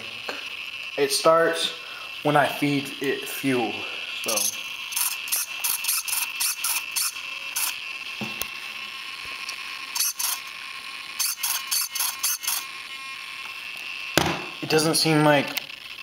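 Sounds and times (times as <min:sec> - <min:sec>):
faint high whine: 0:00.0 - 0:10.5
ratchet-like mechanical clicking: 0:04.3 - 0:07.9, 0:09.5 - 0:12.9.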